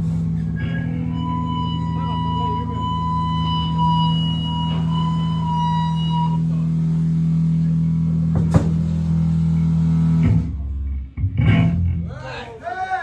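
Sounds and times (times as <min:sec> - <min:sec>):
amplified band drone: 0:00.0 - 0:12.0
high feedback tone: 0:00.4 - 0:07.2.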